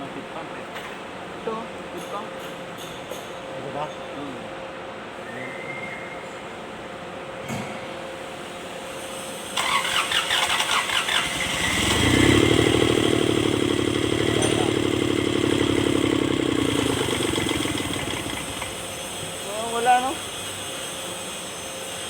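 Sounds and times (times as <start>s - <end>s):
diesel engine running: 9.6s - 20.1s
starter motor cranking: 9.6s - 20.1s.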